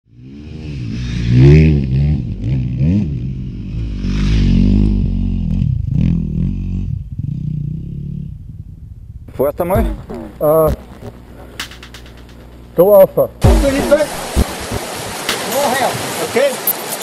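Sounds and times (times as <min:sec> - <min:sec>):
motorcycle engine revving: 0:00.1 - 0:12.8
sharp knocks: 0:11.6 - 0:12.4.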